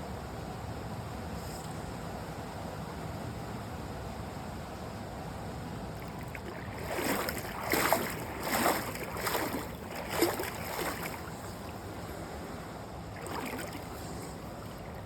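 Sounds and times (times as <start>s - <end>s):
creek rushing: 6.0s - 11.9s, 13.2s - 15.0s
feet splashing in shallow water: 6.0s - 12.1s, 13.1s - 15.0s.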